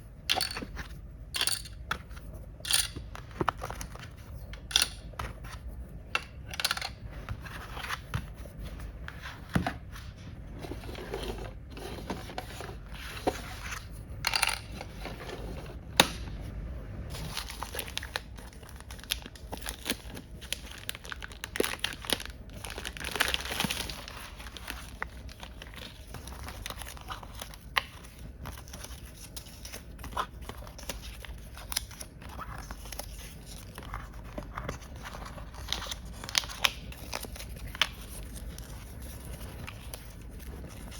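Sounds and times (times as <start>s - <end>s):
small parts clicking and tapping: 2.6s - 3.0s
packaging tearing and crinkling: 17.1s - 34.2s.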